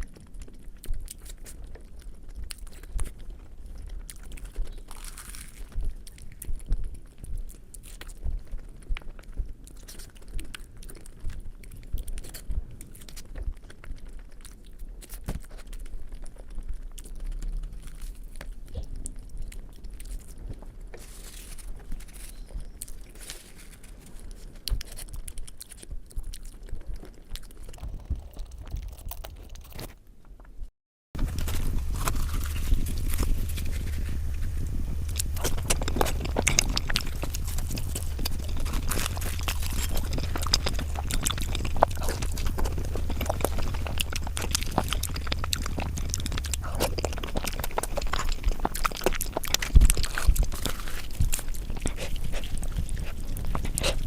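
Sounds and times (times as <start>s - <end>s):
person chewing food: 0.0s - 30.6s, 31.2s - 54.0s.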